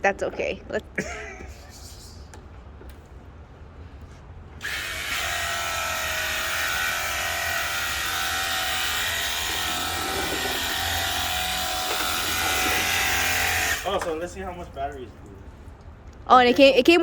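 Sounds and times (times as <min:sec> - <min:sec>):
pressure washer pump whine: 0:04.6 - 0:14.3.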